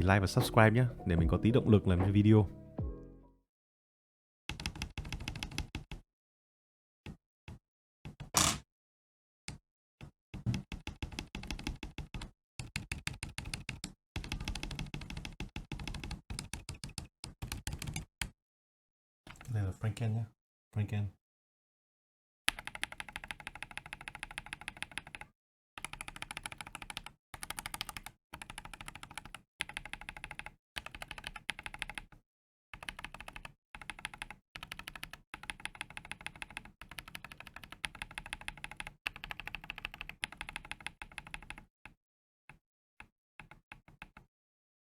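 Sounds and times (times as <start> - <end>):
typing on mechanical keyboard: 4.5 - 6.0, 10.5 - 18.3, 22.5 - 32.2, 32.8 - 41.7, 43.4 - 44.3.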